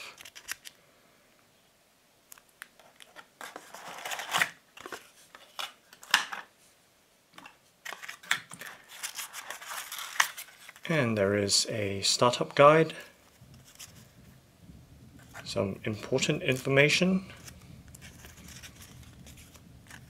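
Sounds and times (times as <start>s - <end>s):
packaging and paper rustling: 0.0s - 0.8s, 2.8s - 6.5s, 7.4s - 10.9s, 13.2s - 14.4s, 15.2s - 20.0s.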